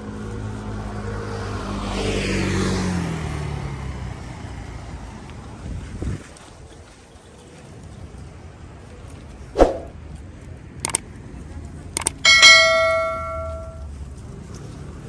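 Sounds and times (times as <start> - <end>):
quick double clicks: 10.8 - 11.0
metal object struck ringing: 12.2 - 13.8.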